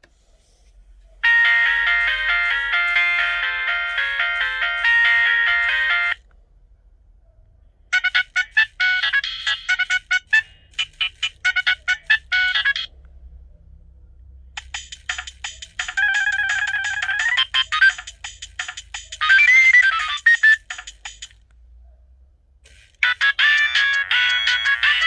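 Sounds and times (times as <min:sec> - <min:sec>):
polyphonic phone ringtones: 0:01.2 - 0:06.2, 0:07.9 - 0:13.0, 0:14.6 - 0:21.3, 0:22.7 - 0:25.0.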